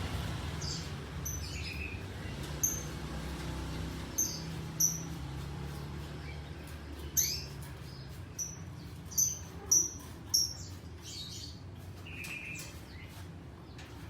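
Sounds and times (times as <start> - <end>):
lovebird chirping: 4.1 - 5.2.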